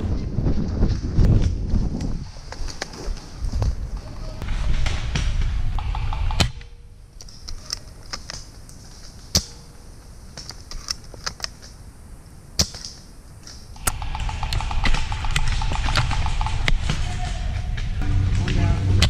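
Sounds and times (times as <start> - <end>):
airsoft guns clicking and snapping: 5.8 - 9.6, 10.3 - 11.8, 12.6 - 17.0.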